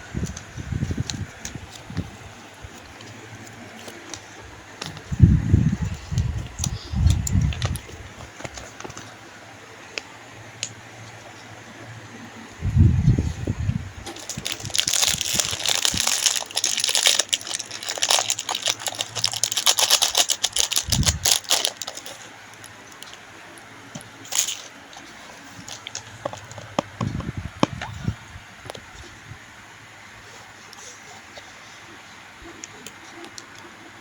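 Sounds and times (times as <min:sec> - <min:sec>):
plastic packaging crinkling: 0:00.2 - 0:09.2, 0:14.0 - 0:23.2, 0:24.0 - 0:27.0.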